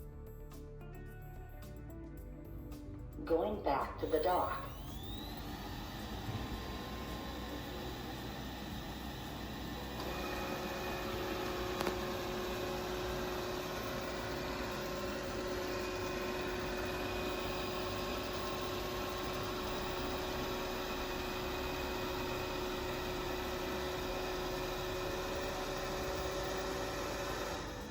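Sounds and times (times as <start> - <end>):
steady hum: 3.2 - 27.9
robot vacuum cleaner whirring: 4.1 - 27.9
robot vacuum click: 11.7 - 12.1.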